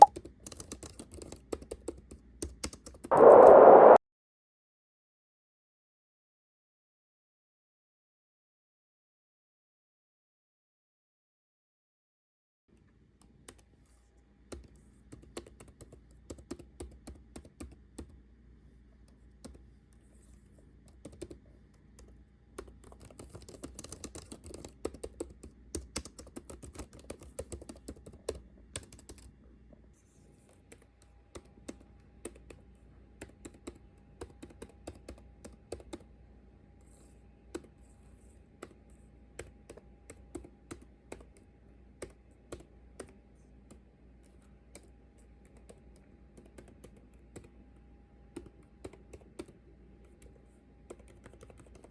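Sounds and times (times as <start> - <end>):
computer keyboard typing: 0.0 - 3.9, 14.5 - 18.2, 20.9 - 21.4, 22.0 - 29.4, 30.6 - 32.6, 33.2 - 36.1, 39.4 - 47.6, 48.3 - 51.9
faint steady hum: 12.7 - 51.9.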